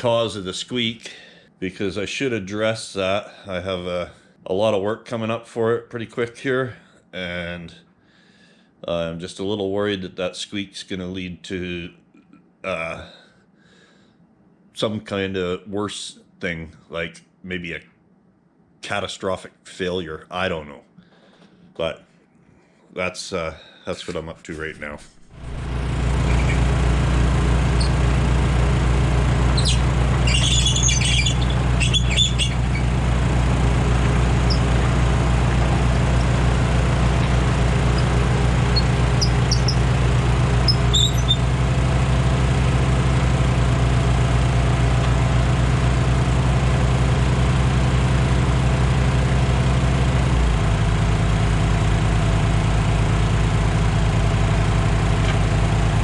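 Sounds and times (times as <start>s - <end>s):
engine running: 25.3s - 56.0s
high-pitched chirps: 27.7s - 28.1s, 29.5s - 33.0s, 37.2s - 41.4s.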